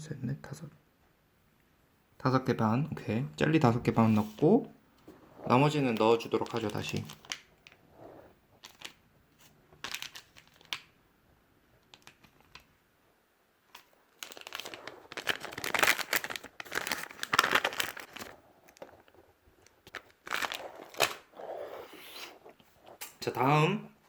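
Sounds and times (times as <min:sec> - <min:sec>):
snack packaging crinkling: 0:05.4 - 0:07.8, 0:08.6 - 0:10.9, 0:11.8 - 0:12.7, 0:13.7 - 0:21.5.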